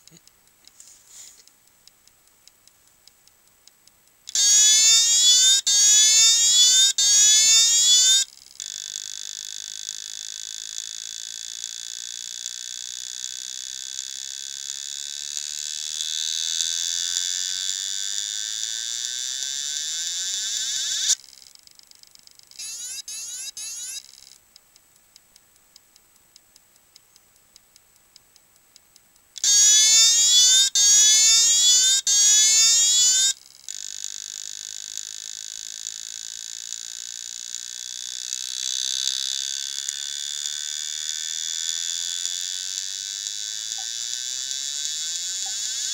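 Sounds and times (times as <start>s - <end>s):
hard drive ticking: 0.0s - 0.8s, 1.4s - 45.9s
hard drive whine: 4.3s - 24.6s, 29.4s - 45.9s.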